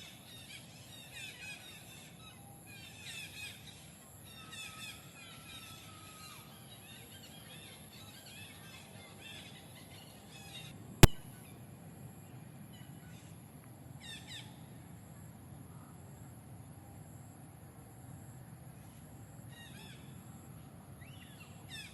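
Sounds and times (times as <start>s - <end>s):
sharp click: 11.0s - 11.2s.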